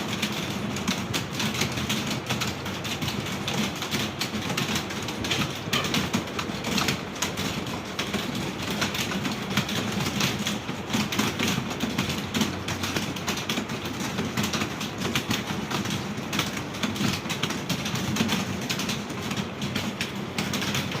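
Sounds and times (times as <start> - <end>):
many keyboards typing: 0.0 - 21.0.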